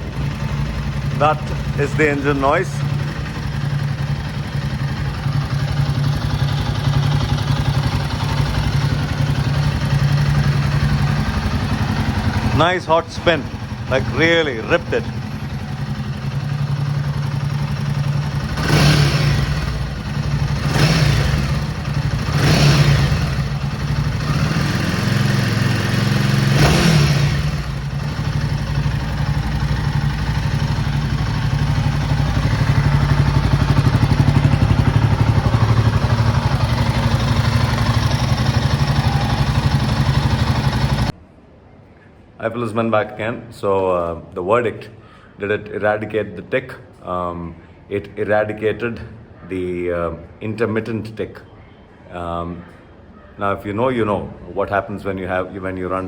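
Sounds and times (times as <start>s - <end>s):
motorcycle engine idling and revving: 0.0s - 41.2s.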